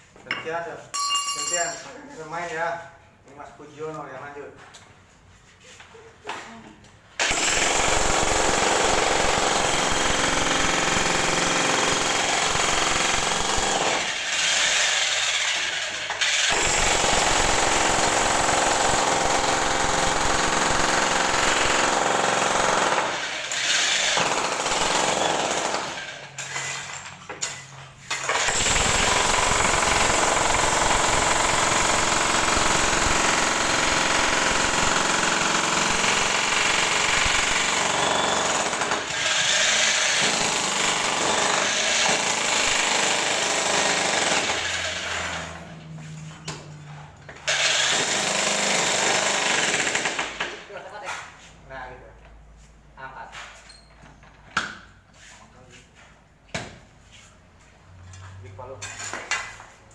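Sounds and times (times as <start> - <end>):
jackhammer breaking tile: 7.2 - 45.7, 47.5 - 50.7.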